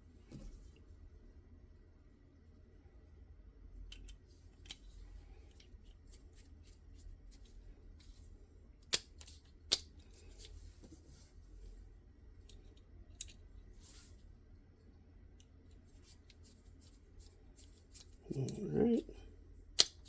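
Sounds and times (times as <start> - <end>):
clicks and taps of gun parts: 8.8 - 10.5, 12.4 - 13.4.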